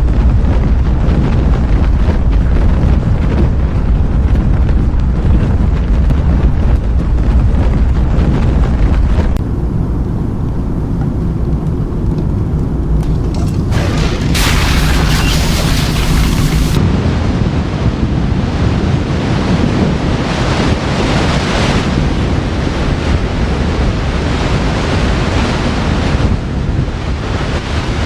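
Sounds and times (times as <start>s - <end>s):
bright rushing hiss: 13.1s - 16.8s.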